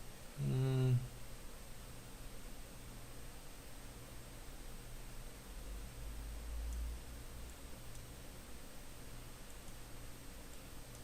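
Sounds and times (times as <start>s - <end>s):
computer mouse click: 10.5s - 11.0s.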